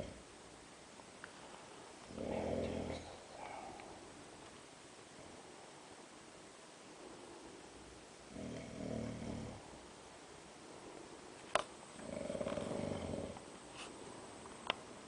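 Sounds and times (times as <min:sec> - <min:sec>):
man snoring: 0:00.0 - 0:00.2, 0:08.3 - 0:09.6, 0:12.0 - 0:13.4.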